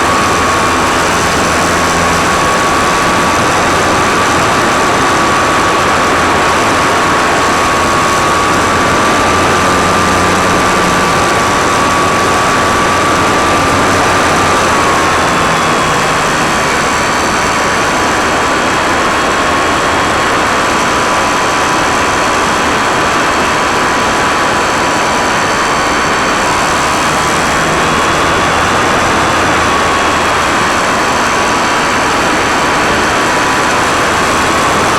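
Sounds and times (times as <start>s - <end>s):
electric motor and propeller whine: 0.0s - 34.9s.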